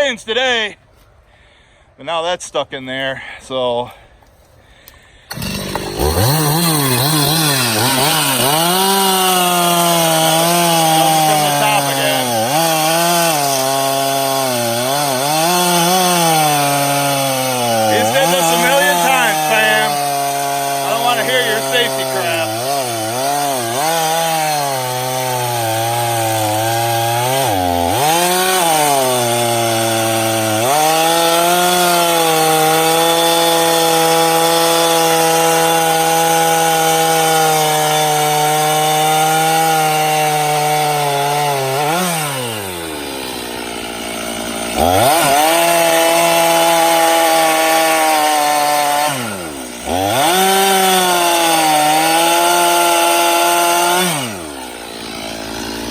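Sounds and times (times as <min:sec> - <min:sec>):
chainsaw cutting wood: 0:04.2 - 0:55.9.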